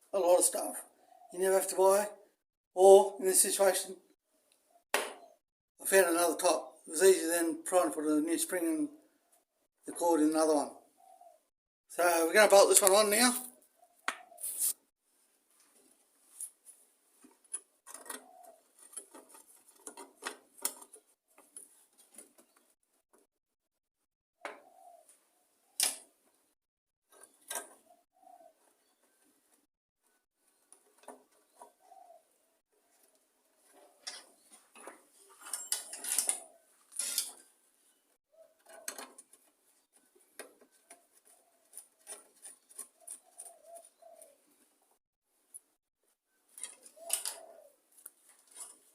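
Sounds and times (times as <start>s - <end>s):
dove cooing: 0.9s - 1.4s, 10.8s - 11.5s, 13.7s - 14.5s, 17.9s - 19.4s, 24.4s - 25.8s, 27.7s - 29.2s, 31.3s - 34.5s, 35.9s - 36.8s, 38.3s - 39.2s, 40.6s - 44.6s, 46.6s - 47.9s
metal tools clicking and tapping: 34.0s - 37.4s.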